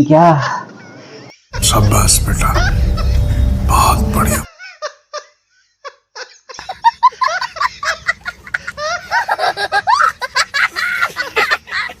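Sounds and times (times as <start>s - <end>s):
high-pitched giggling laughter: 4.5s - 12.0s.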